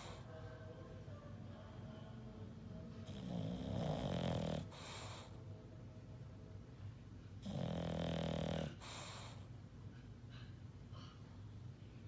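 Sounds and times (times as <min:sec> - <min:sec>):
dog snoring: 0:03.0 - 0:05.4, 0:07.4 - 0:09.5
dog breathing: 0:03.1 - 0:05.5, 0:07.4 - 0:11.2.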